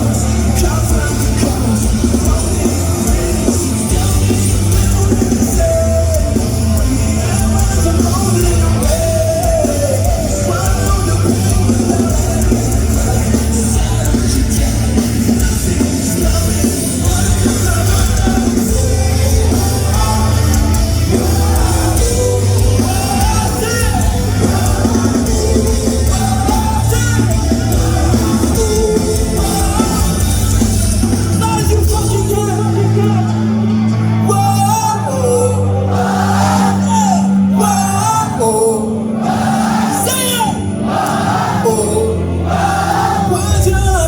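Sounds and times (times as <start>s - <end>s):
live rock band playing: 0.0s - 44.0s
person singing: 0.0s - 44.0s.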